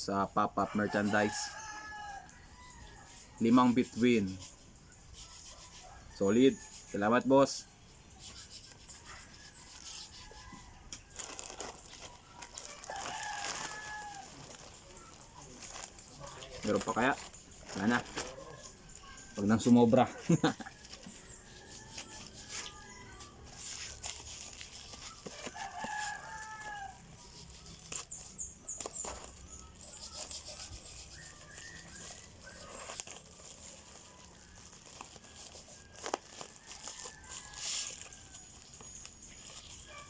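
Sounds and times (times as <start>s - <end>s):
rooster crowing: 0.6s - 4.1s, 12.5s - 27.5s, 33.7s - 38.8s
package rustling and clicking: 11.0s - 16.0s.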